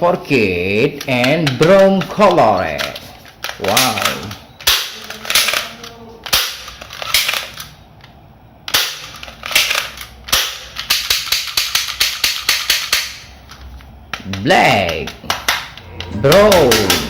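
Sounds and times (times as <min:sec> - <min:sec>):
toy pistol shots: 0:03.6 - 0:07.6, 0:08.7 - 0:13.2, 0:15.3 - 0:17.0.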